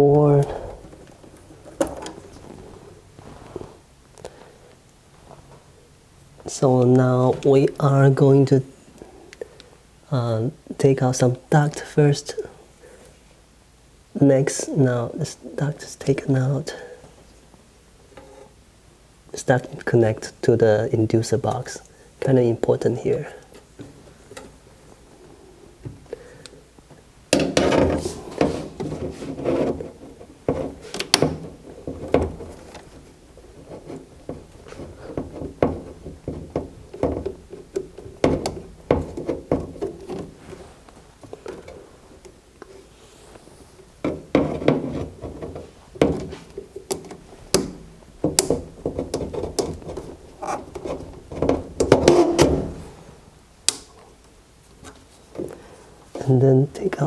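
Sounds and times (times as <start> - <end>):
knocks and scrapes on metal ducting: 27.3 - 42.2, 44.0 - 53.1.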